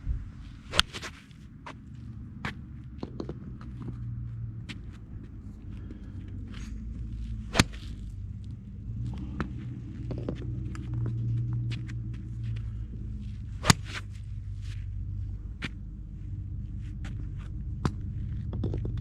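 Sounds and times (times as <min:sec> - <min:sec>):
steady low hum: 0:00.0 - 0:19.0
golf club striking ball: 0:00.7 - 0:01.1, 0:07.5 - 0:08.0, 0:13.6 - 0:14.0.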